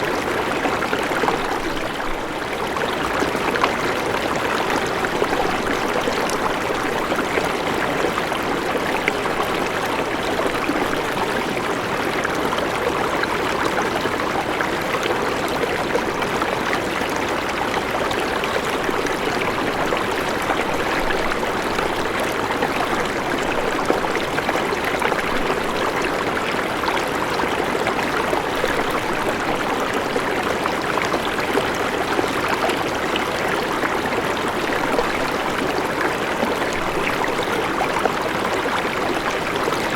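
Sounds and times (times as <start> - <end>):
river rushing over rocks: 18.6 - 39.9.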